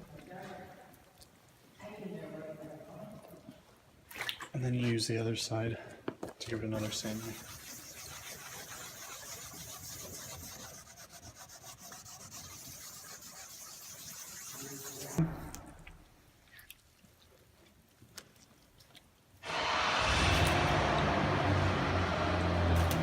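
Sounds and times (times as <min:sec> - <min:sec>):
sanding pad rubbing plastic: 0:06.8 - 0:15.2.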